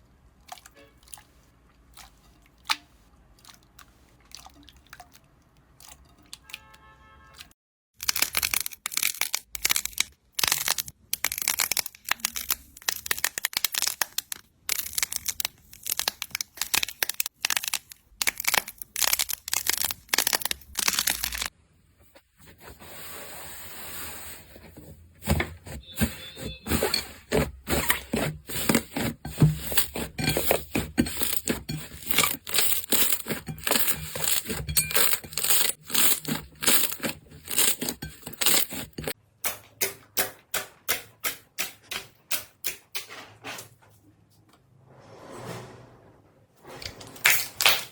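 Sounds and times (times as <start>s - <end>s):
slime crackling and popping: 8.0s - 21.5s.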